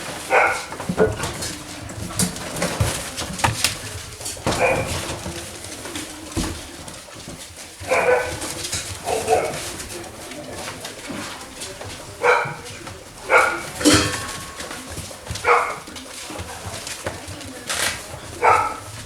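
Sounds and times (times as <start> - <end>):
puppies yapping: 0.2 - 5.4, 7.8 - 10.1, 11.8 - 16.8, 17.5 - 19.0.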